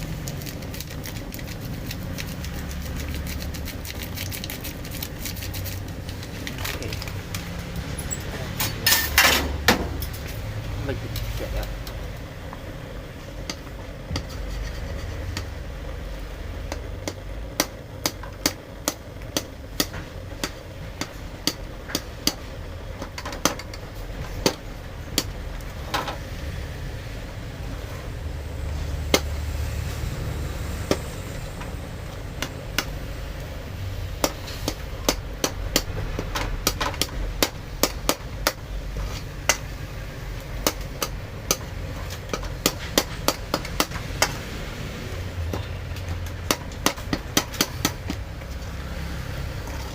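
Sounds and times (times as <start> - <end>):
steady low rumble: 0.0 - 48.7
sharp knocks and clicks: 34.2 - 38.6.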